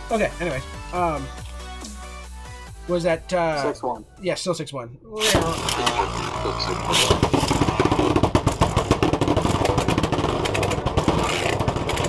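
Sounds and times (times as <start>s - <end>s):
spinning tops rattling and scraping: 5.2s - 12.0s.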